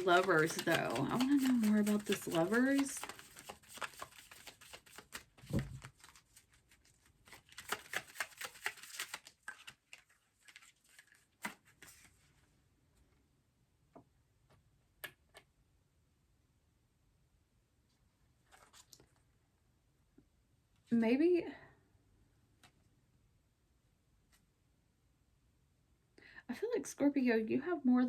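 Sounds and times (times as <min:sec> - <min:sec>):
cards shuffling: 0:00.0 - 0:12.2.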